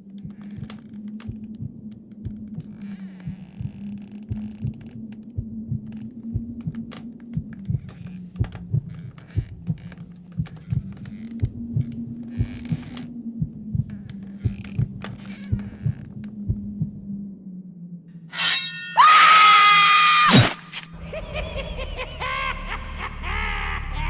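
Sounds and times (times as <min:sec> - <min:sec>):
steady low hum: 0:00.0 - 0:18.9.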